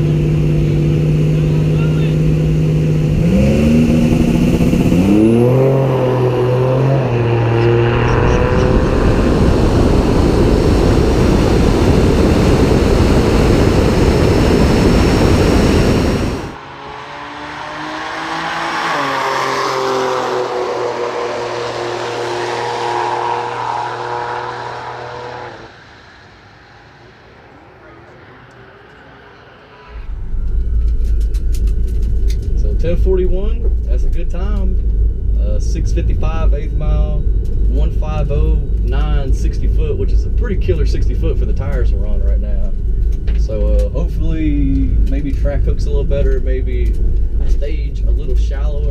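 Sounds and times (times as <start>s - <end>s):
electric motor whining: 3.9s - 16.6s
wind noise: 4.1s - 16.7s.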